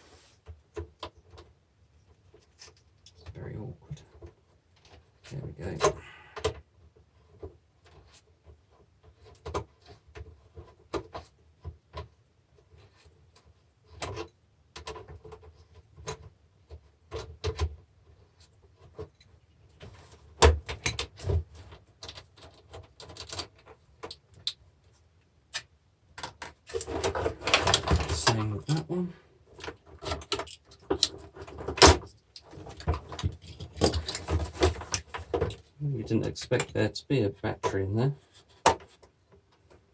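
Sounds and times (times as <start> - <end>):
tools and parts clicking and knocking: 29.5 - 35.7.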